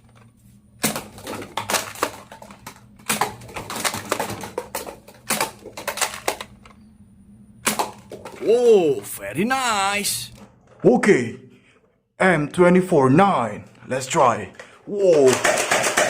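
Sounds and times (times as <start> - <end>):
plastic toy gun clicks and clatters: 14.6 - 16.0.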